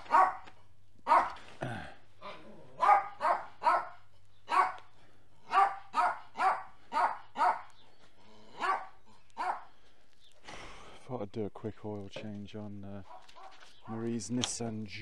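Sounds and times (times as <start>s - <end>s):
dog barking: 0.0s - 1.4s, 2.8s - 7.8s, 8.5s - 9.7s, 13.0s - 13.6s.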